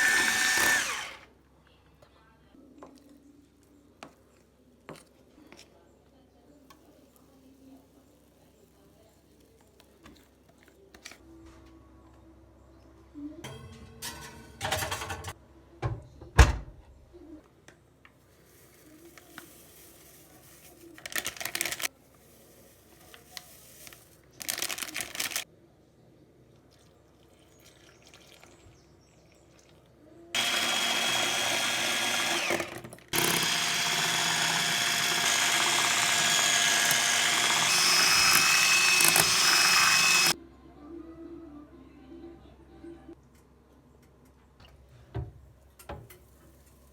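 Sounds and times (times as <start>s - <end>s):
small electric motor whining: 0.0s - 1.2s, 30.4s - 40.4s.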